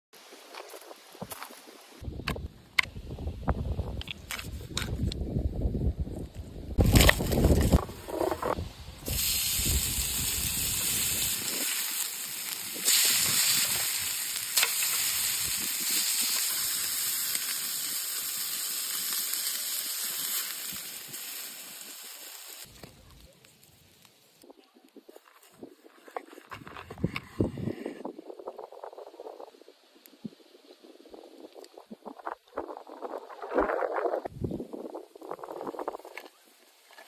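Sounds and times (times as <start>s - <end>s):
low wind rumble: 1.9s - 11.8s
steak sizzling: 6.8s - 22.8s.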